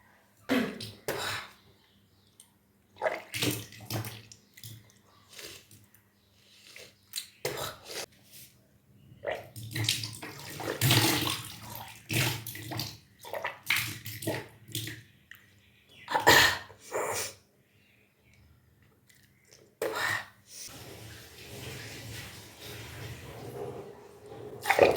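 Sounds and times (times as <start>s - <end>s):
vomit splashing: 3.0s - 5.0s, 9.2s - 15.1s, 20.7s - 24.9s.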